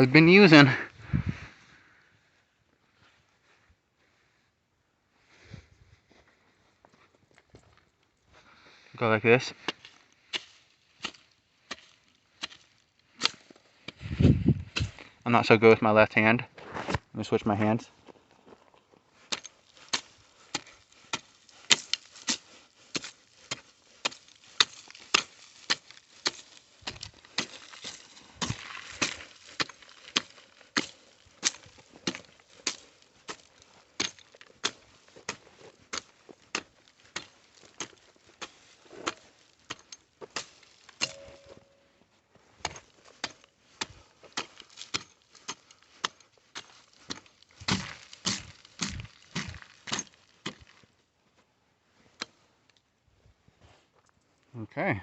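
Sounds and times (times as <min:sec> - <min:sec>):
hand tool chopping into dirt: 0:09.7 - 0:14.1, 0:19.3 - 0:41.5, 0:42.6 - 0:50.7.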